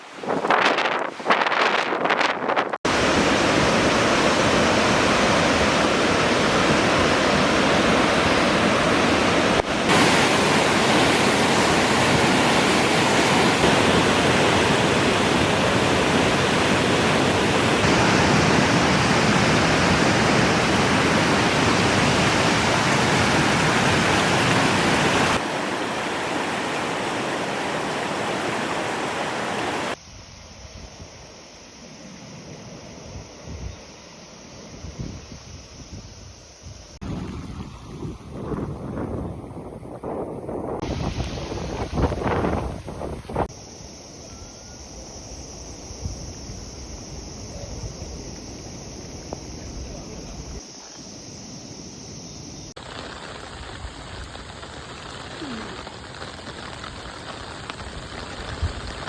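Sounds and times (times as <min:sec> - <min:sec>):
storm wind and water rushing: 0:00.0 - 0:30.0, 0:34.6 - 0:43.6, 0:51.9 - 0:59.0.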